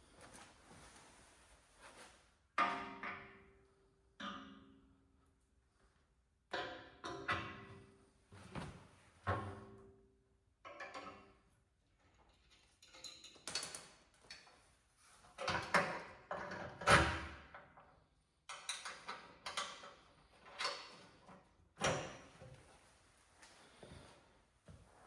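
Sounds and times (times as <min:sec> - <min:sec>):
metal clanks and rattles: 0:15.4 - 0:17.8.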